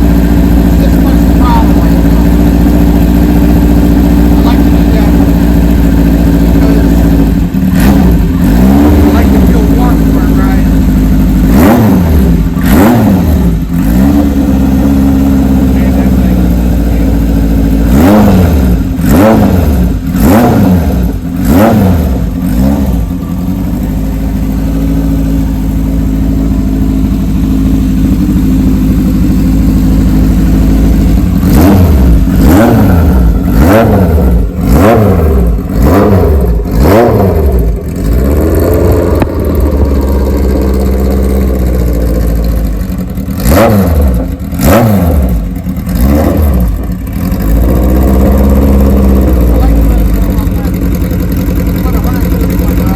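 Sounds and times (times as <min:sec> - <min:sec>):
motorcycle engine revving and idling: 0:00.0 - 0:52.9.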